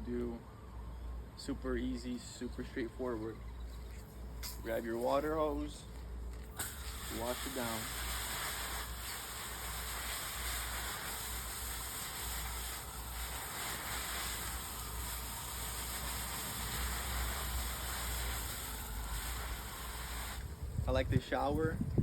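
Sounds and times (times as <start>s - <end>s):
hose nozzle spraying water: 6.5s - 20.6s.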